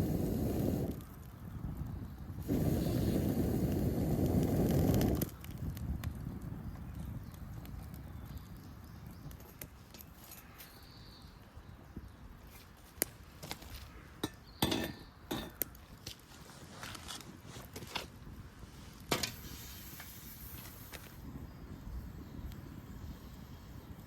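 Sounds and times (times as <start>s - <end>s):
knocks and clicks of objects handled: 13.0s - 16.2s.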